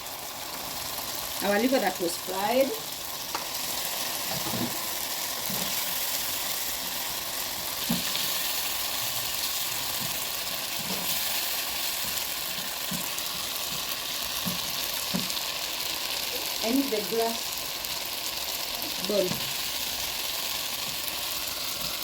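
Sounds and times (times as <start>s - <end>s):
food sizzling in a pan: 0.0s - 22.0s
spoon knocking on pan: 14.4s - 15.4s.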